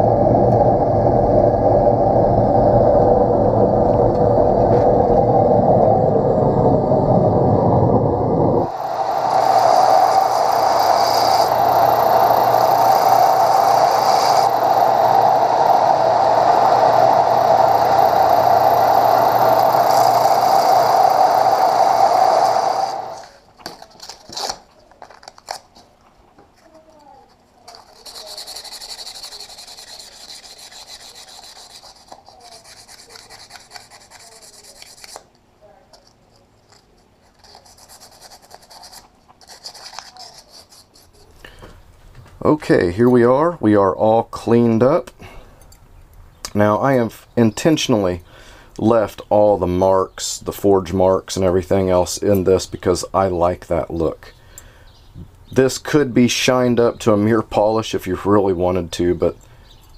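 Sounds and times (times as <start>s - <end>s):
power tool running: 8.4s - 23.4s
hand rasping on steel: 27.8s - 35.2s.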